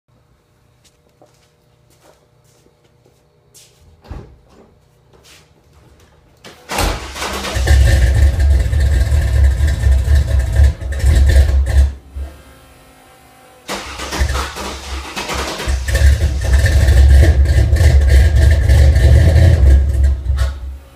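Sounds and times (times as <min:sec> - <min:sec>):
engine starter cranking: 0:06.7 - 0:11.9, 0:13.7 - 0:18.8.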